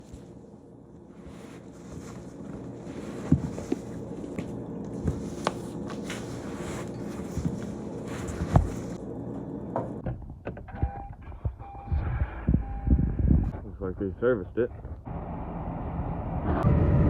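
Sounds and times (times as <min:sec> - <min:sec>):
machine engine running: 0:12.0 - 0:17.0.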